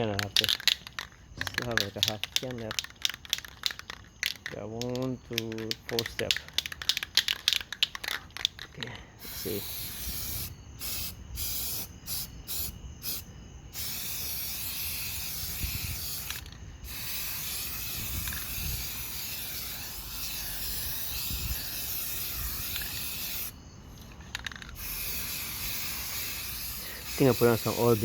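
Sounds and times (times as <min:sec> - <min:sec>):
aerosol spray can hissing: 0:09.2 - 0:23.6, 0:24.8 - 0:28.0.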